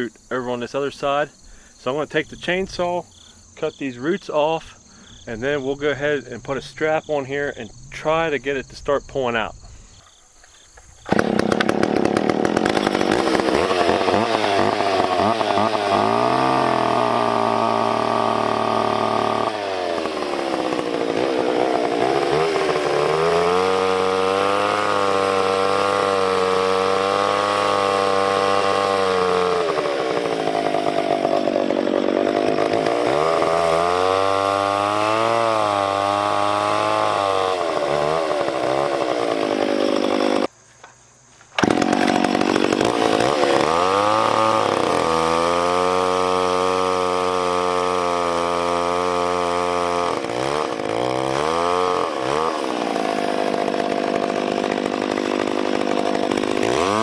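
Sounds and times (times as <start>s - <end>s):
chainsaw cutting roots: 10.8s - 40.5s, 41.4s - 57.0s.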